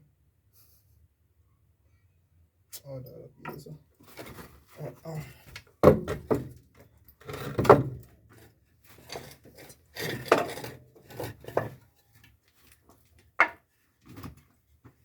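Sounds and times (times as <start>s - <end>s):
wooden boards scraping: 9.0s - 11.8s.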